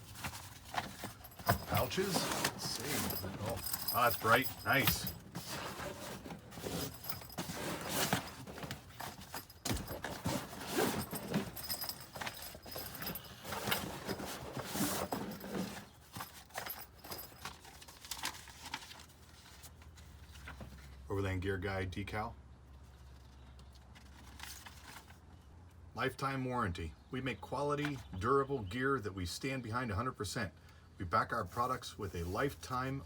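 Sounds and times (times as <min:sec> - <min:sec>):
fabric pouches rustling: 0:00.0 - 0:19.1.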